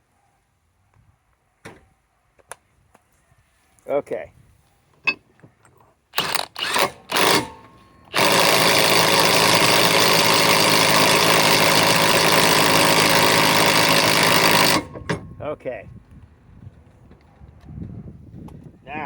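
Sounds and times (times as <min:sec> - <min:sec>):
impact wrench hammering: 0:06.2 - 0:15.3.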